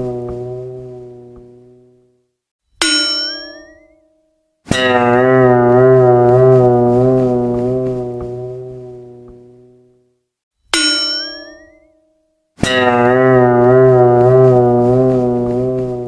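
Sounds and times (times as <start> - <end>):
wobbling brass-like comedy note: 0.0 - 1.9, 4.7 - 9.6, 12.6 - 16.0
bell-like ding: 2.8 - 4.0, 10.8 - 11.9.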